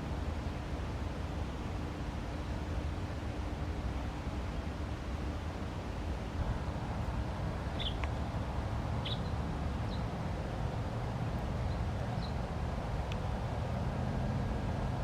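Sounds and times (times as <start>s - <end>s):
low outdoor rumble: 5.6s - 15.0s.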